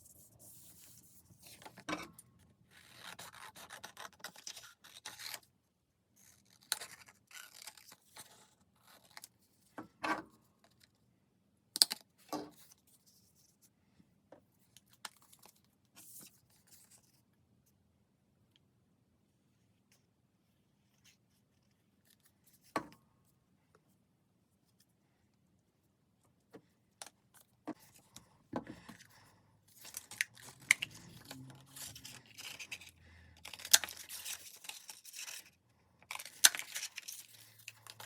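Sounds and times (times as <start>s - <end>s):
paper rubbing and rustling: 29.7s - 35.5s.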